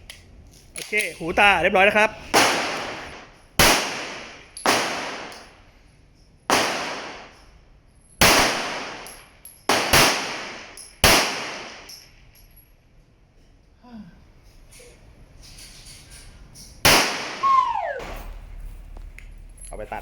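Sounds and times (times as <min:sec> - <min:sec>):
pistol shots with reverberant tail: 0:02.3 - 0:05.5, 0:06.5 - 0:07.4, 0:08.2 - 0:11.9, 0:16.9 - 0:18.4.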